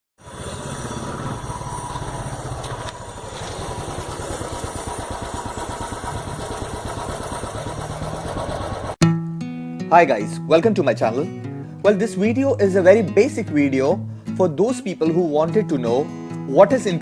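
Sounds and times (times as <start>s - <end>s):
motorcycle engine idling: 0.2s - 9.0s.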